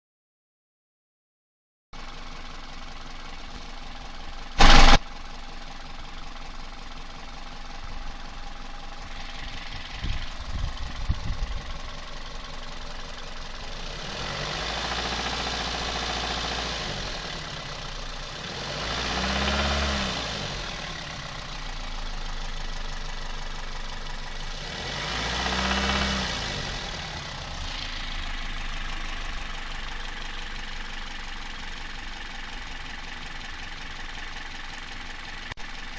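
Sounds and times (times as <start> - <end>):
engine revving: 4.6 - 5.0, 13.6 - 22.0, 24.2 - 31.8
short loud sharp sound: 4.6 - 5.0.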